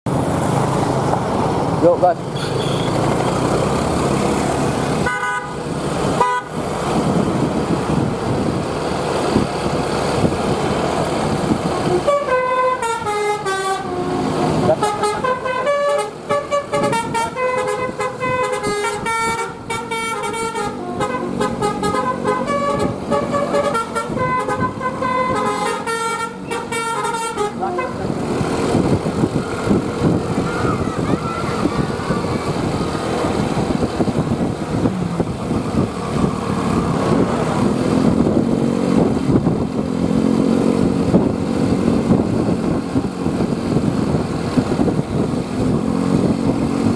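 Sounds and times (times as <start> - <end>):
bus engine running: 0.1 - 46.9
bus horn playing a melody: 5.0 - 6.6, 11.7 - 28.1.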